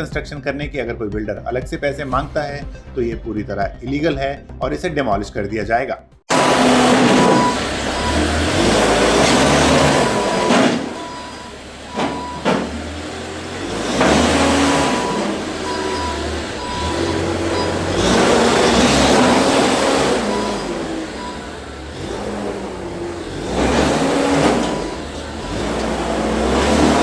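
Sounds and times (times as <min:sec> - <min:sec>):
diesel engine revving: 0:06.3 - 0:27.0.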